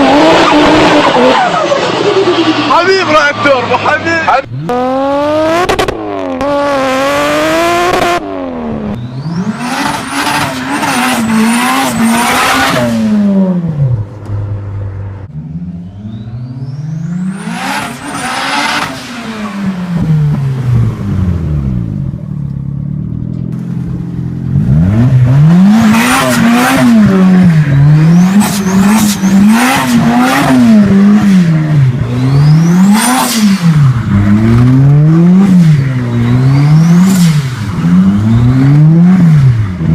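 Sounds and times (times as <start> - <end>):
car engine revving: 0.0 - 39.9.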